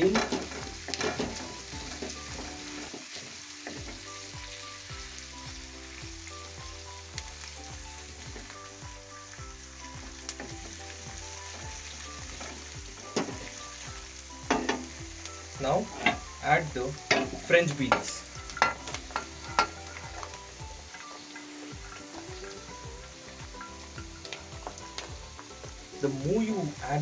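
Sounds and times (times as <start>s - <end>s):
vegetables sizzling in hot oil: 0.0s - 27.0s.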